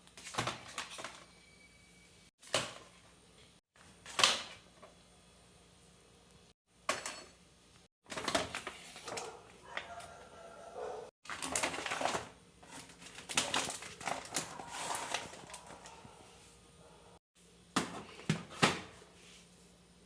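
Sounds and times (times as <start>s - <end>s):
household items rustling: 8.0s - 16.6s.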